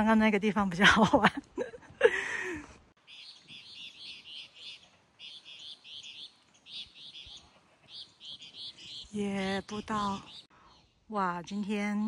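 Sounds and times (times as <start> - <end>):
bird chirping: 3.0 - 11.1.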